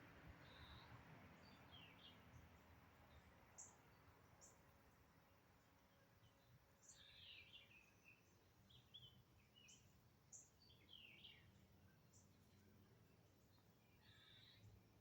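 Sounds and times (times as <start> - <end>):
low background noise: 0.0 - 15.0
bird chirps and calls: 13.9 - 14.7.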